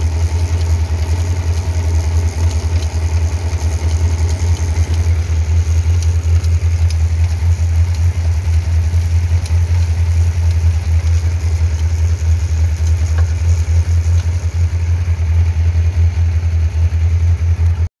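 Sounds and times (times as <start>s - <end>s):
motorcycle engine running at low revs: 0.0s - 17.9s
faint ticks: 14.1s - 14.4s.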